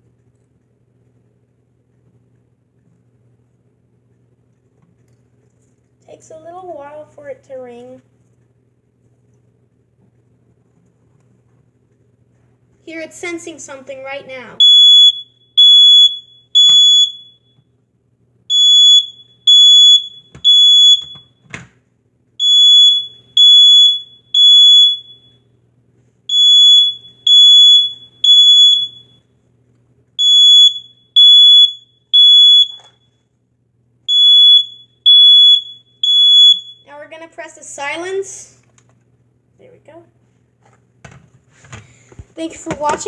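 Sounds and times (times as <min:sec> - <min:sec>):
smoke alarm beeping: 0:14.6 - 0:17.6, 0:18.5 - 0:21.5, 0:22.4 - 0:25.4, 0:26.3 - 0:29.3, 0:30.2 - 0:33.2, 0:34.1 - 0:37.0.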